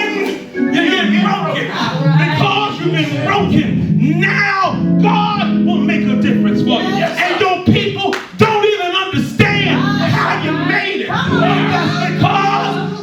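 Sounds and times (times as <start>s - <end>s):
church music with held chords: 0.0s - 13.0s
person singing: 9.5s - 13.0s.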